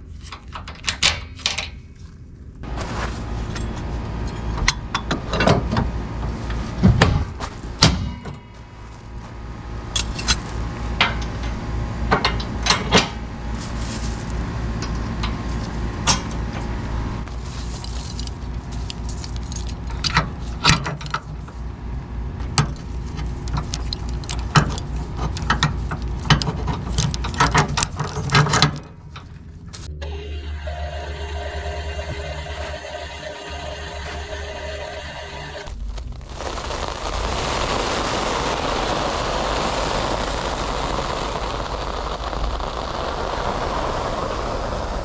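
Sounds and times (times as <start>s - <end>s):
vehicle engine running: 2.6s - 45.0s
metal clinking and rattling: 17.3s - 21.6s.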